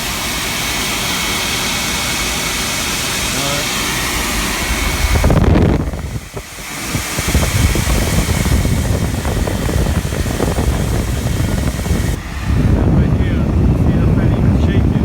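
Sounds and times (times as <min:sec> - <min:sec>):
cooling fans rushing air: 0:00.0 - 0:15.0
wind buffeting microphone: 0:03.4 - 0:15.0.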